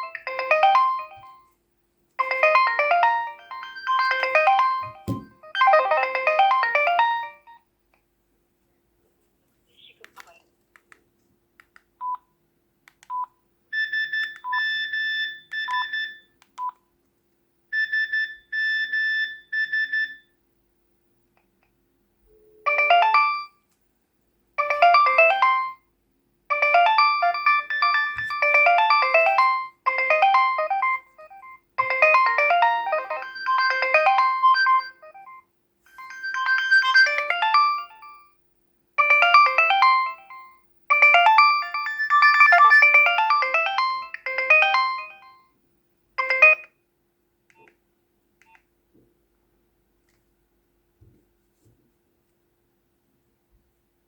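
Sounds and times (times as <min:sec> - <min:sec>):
melodic electronic ringtone: 0:00.0 - 0:01.4, 0:02.2 - 0:07.6, 0:22.7 - 0:23.6, 0:24.6 - 0:25.8, 0:26.5 - 0:38.3, 0:39.0 - 0:45.4, 0:46.2 - 0:46.7
pulsed electronic phone ring: 0:02.2 - 0:07.4, 0:26.5 - 0:35.4, 0:36.0 - 0:38.2, 0:39.0 - 0:45.3.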